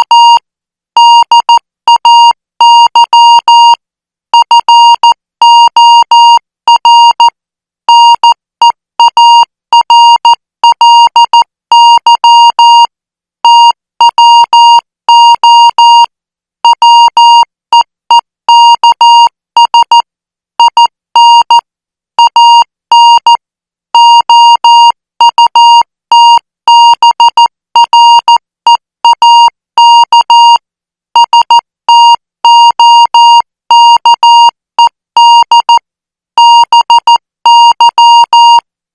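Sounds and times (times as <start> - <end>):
morse code beeps: 0.0 - 0.4, 1.0 - 3.8, 4.4 - 7.3, 9.0 - 12.9, 13.5 - 16.1, 20.6 - 21.6, 22.2 - 23.4, 24.0 - 28.4, 29.1 - 30.6, 31.2 - 34.5, 36.4 - 38.6.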